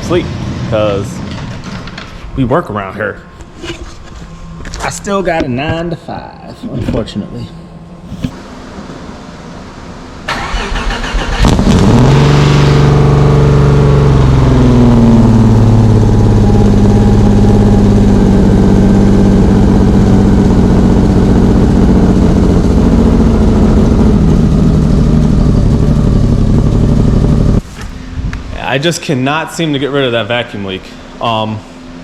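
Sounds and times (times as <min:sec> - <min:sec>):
car engine idling: 0:09.6 - 0:28.2.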